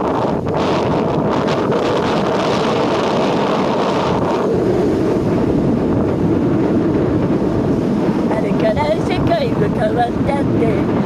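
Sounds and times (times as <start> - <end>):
sea waves washing: 0.0 - 11.0
wind on microphone: 0.0 - 11.0.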